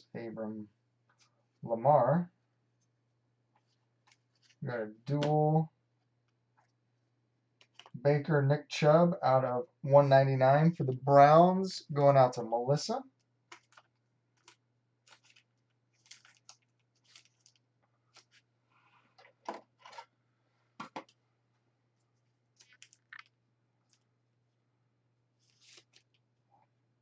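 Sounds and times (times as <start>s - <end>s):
cards clicking and rustling: 7.6s - 8.0s, 13.5s - 18.5s, 19.2s - 20.1s, 25.4s - 26.2s.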